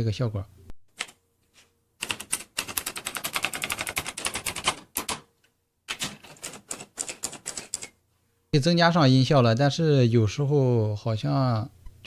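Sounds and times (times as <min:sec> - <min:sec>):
rapid typewriter-like clicking: 0:02.0 - 0:05.2, 0:05.9 - 0:07.9.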